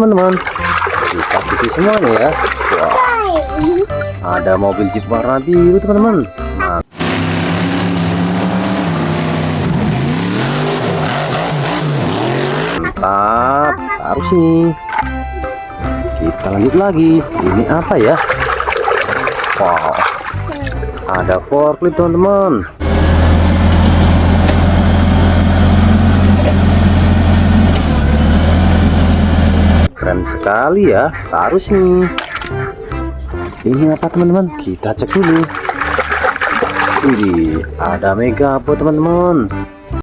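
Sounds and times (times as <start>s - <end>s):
car engine running and revving: 6.9s - 12.8s, 22.8s - 29.9s.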